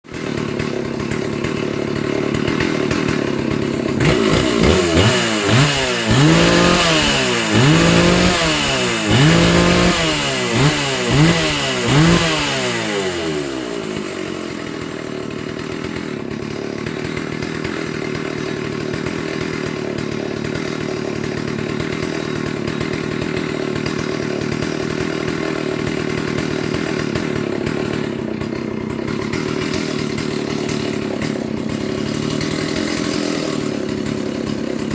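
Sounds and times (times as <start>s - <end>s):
chainsaw revving and idling: 0.0s - 34.9s.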